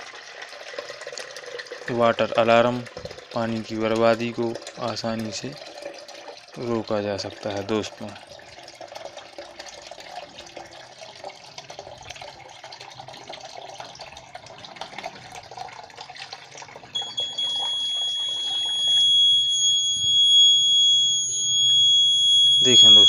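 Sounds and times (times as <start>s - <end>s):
tap water running into bucket: 0.0s - 23.0s
high-pitched buzzer tone: 17.0s - 23.0s.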